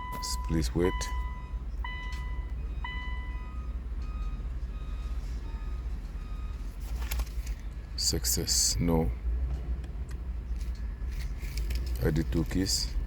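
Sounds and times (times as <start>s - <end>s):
electronic beeps: 0.0s - 6.6s.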